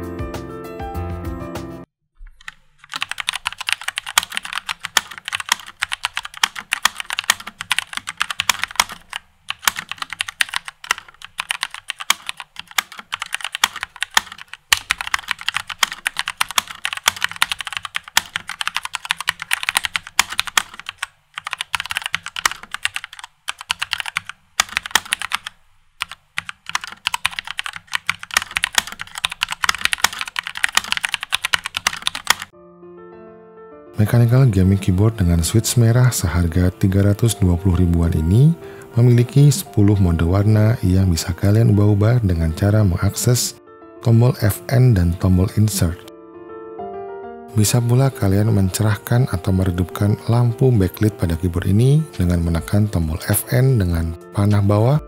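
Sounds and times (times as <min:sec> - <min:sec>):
mechanical keyboard typing: 0:02.3 - 0:32.5.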